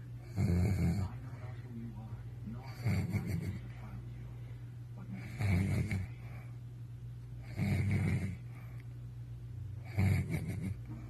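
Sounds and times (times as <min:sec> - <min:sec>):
quiet breathing: 0:00.0 - 0:06.8, 0:07.4 - 0:09.1, 0:09.8 - 0:11.0
steady low hum: 0:00.0 - 0:11.0
man snoring: 0:00.2 - 0:01.1, 0:02.7 - 0:03.6, 0:05.2 - 0:06.1, 0:07.5 - 0:08.4, 0:09.8 - 0:10.8.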